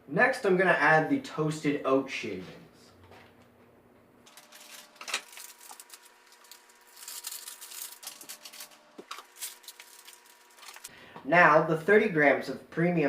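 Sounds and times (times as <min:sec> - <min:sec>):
packet crinkling: 0:04.3 - 0:10.9.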